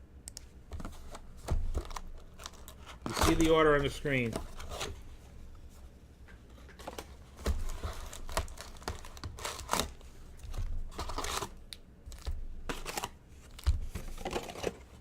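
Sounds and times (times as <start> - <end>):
card pack packaging crinkling: 1.7 - 4.9, 6.8 - 15.0.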